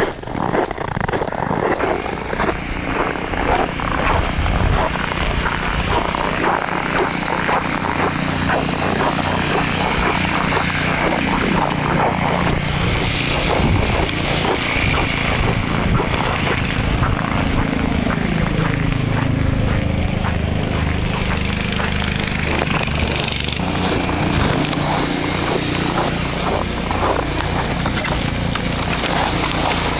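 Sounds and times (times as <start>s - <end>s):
wind blowing on microphone: 0.0s - 7.4s, 9.7s - 18.9s.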